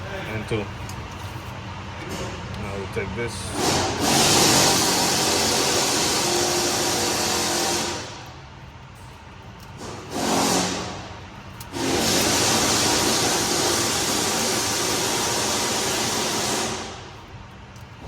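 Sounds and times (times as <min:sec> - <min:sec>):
compressed air blow gun hissing: 0:09.8 - 0:11.1, 0:11.7 - 0:17.0.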